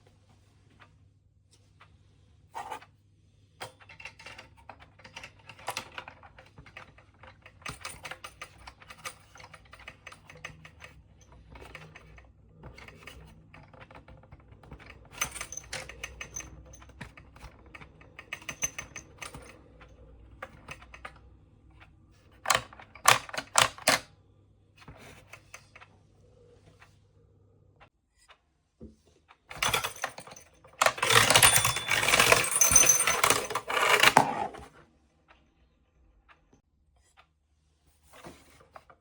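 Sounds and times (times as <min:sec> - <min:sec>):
alarm clock marbles clicking and rattling: 0:29.6 - 0:34.6.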